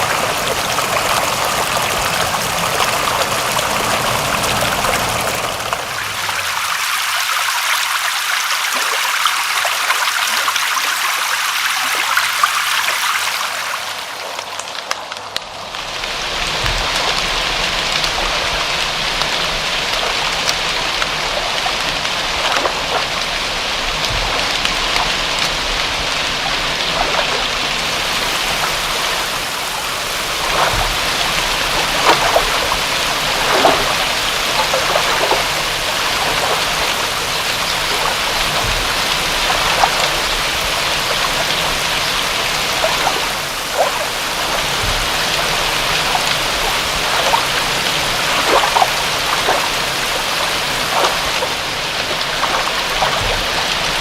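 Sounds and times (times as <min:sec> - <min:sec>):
raindrops splashing close by: 0:00.0 - 0:54.0
steady rain falling: 0:00.0 - 0:54.0.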